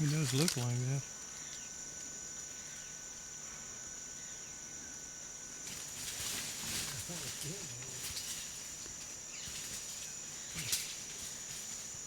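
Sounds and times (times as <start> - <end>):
high-pitched insect drone: 0.0 - 12.0
rustling hiss: 5.5 - 12.0.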